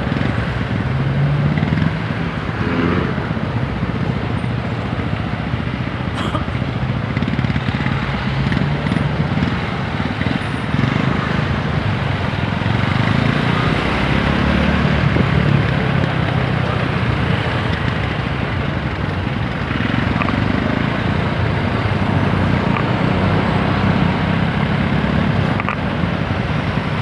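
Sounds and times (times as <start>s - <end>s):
motorcycle engine running: 0.0s - 27.0s
wind and road noise: 0.0s - 27.0s.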